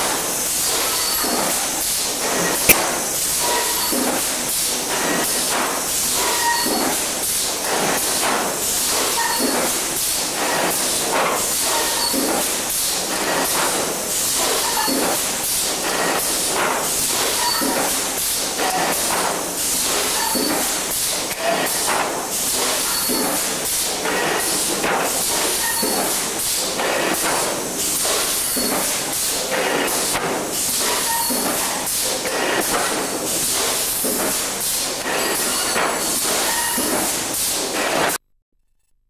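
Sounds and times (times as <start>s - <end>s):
machine hissing: 0.0s - 38.2s
machine clicks and knocks: 7.6s - 38.2s.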